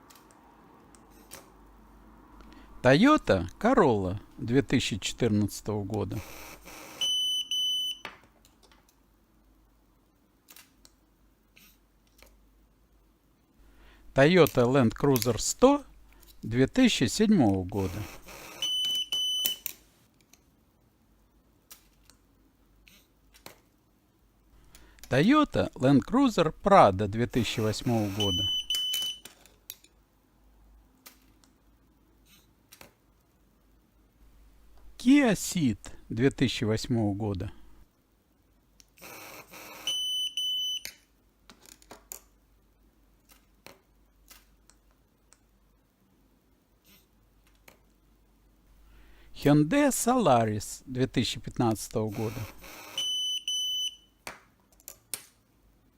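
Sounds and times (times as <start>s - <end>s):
short electronic beeps: 27.8s - 29.2s.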